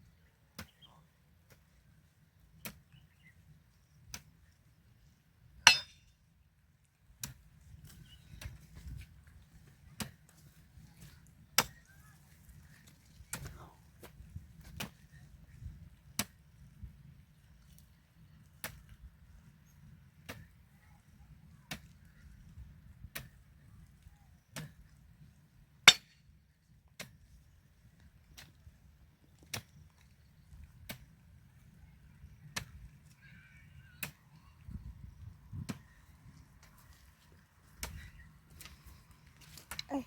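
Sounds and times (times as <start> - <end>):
hand hoe chopping into soil: 10.0 - 11.9, 13.3 - 15.0, 16.2 - 16.4, 25.9 - 26.2, 26.9 - 27.2, 37.7 - 38.8.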